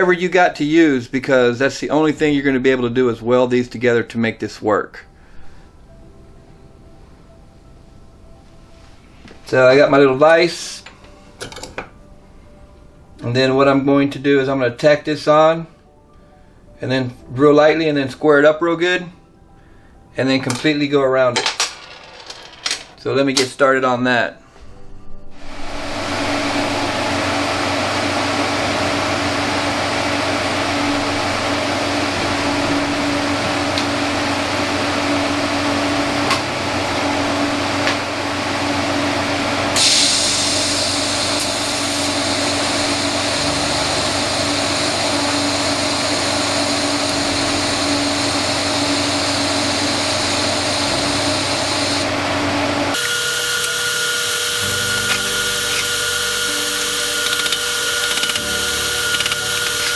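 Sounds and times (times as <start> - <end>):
power tool motor running: 41.4 - 45.6, 52.9 - 59.9.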